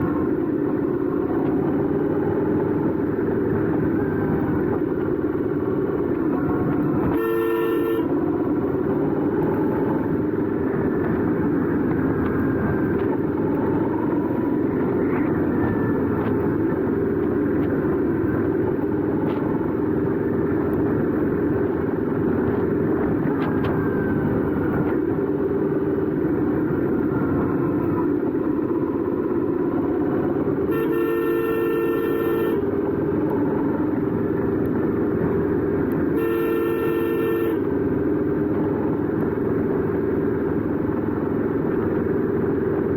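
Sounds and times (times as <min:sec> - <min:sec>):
motorcycle engine droning: 0:00.0 - 0:42.9
vehicle horn honking: 0:06.9 - 0:08.3, 0:30.7 - 0:32.8, 0:36.1 - 0:37.9.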